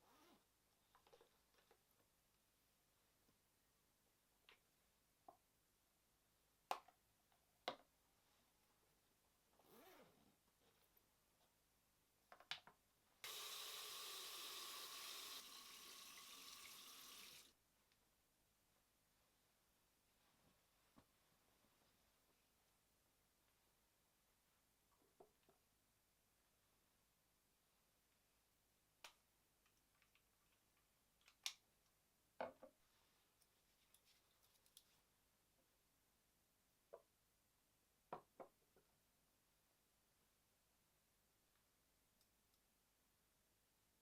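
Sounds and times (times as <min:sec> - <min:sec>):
water running from a tap: 0:13.2 - 0:17.5.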